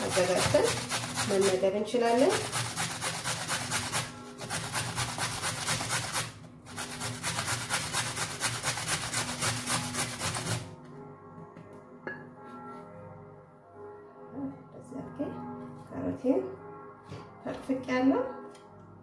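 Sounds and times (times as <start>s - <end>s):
carrot rasping on grater: 0.0s - 10.7s
soft background music: 0.0s - 19.0s.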